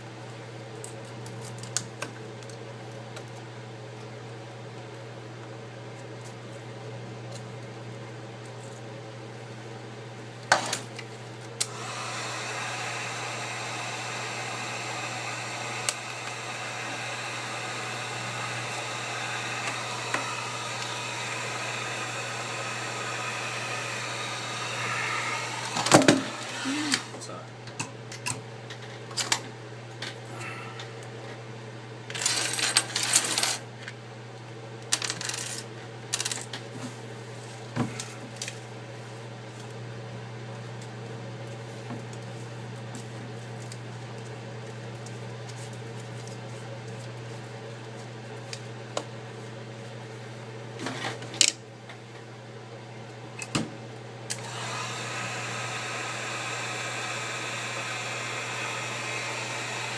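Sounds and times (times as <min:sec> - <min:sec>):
heat gun blowing: 0:11.6 - 0:27.2, 0:54.3 - 0:59.9.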